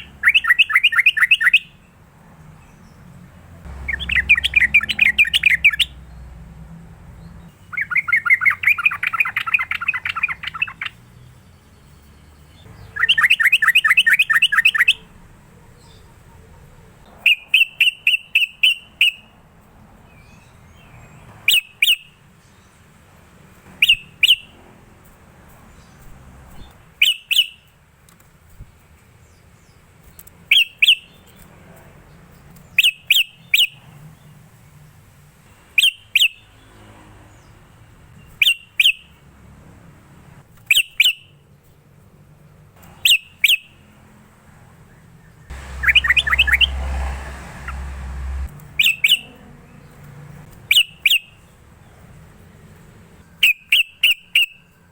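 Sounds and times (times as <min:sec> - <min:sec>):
low rumbling noise: 0:45.5 - 0:48.6.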